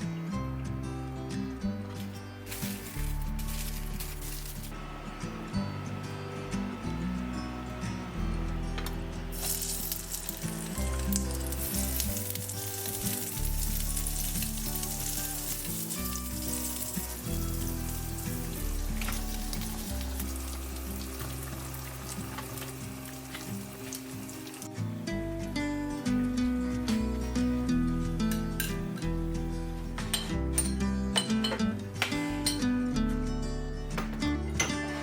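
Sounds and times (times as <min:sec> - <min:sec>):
background music: 0:00.0 - 0:35.0
food sizzling in a pan: 0:09.3 - 0:24.8.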